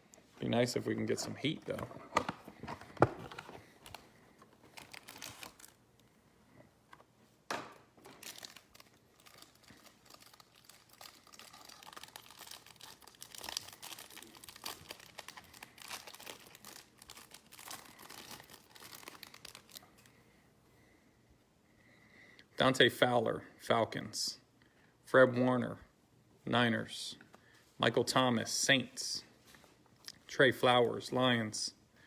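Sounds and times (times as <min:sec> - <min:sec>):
card pack wrappers crinkling: 0:01.0 - 0:05.8, 0:08.0 - 0:20.1
wrapper snapping: 0:08.0 - 0:19.8.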